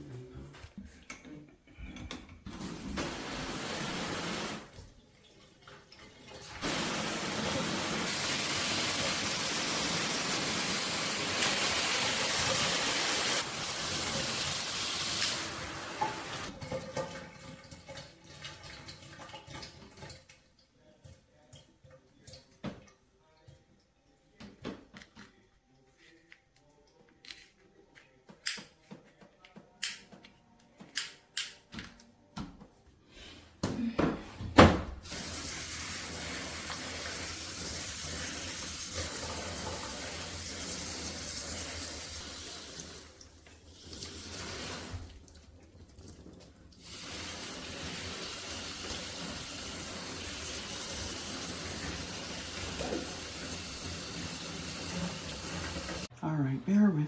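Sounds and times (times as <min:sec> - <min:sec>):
water spraying from shower head: 0:02.5 - 0:04.7, 0:06.6 - 0:16.5, 0:35.0 - 0:43.2, 0:46.8 - 0:56.1.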